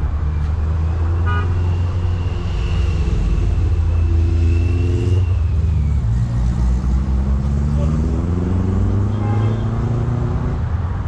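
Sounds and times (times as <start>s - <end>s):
vehicle engine rumble: 0.0s - 11.0s
thin high whine: 1.6s - 5.4s.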